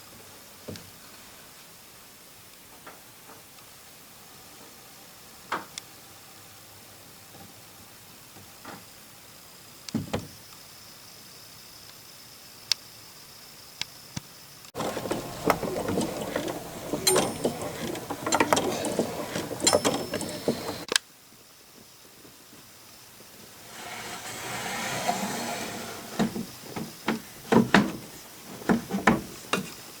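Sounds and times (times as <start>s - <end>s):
barrel organ mechanism clattering: 14.8s - 20.9s, 23.6s - 29.4s.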